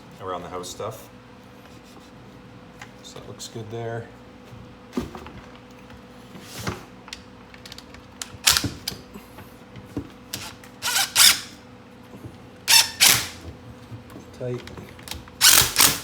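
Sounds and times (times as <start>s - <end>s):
hand tool clicking on bolts: 10.8s - 11.5s, 12.7s - 13.4s, 15.4s - 16.0s.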